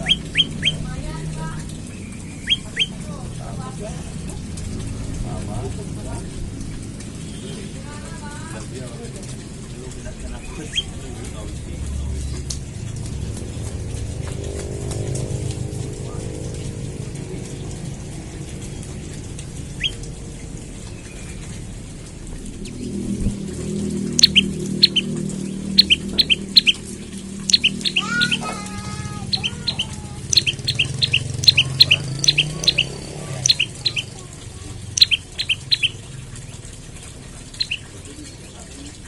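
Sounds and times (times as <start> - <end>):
bird chirping: 0.0 - 3.1, 10.3 - 11.0, 19.7 - 21.6, 22.5 - 39.0
steady low rumble: 0.0 - 39.0.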